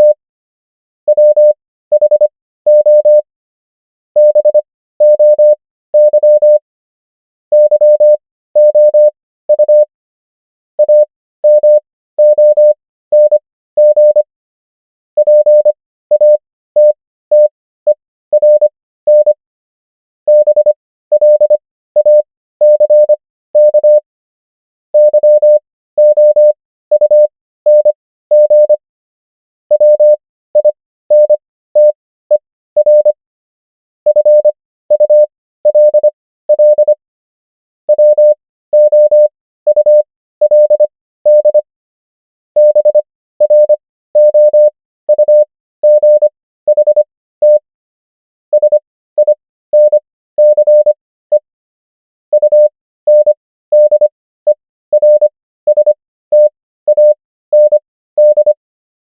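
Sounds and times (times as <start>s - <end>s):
morse code beeps: 0.0s - 0.2s, 1.1s - 3.2s, 4.2s - 6.6s, 7.5s - 9.9s, 10.8s - 14.3s, 15.2s - 19.4s, 20.3s - 24.0s, 25.0s - 28.8s, 29.7s - 33.2s, 34.1s - 37.0s, 37.9s - 41.7s, 42.6s - 47.7s, 48.5s - 51.5s, 52.3s - 58.6s.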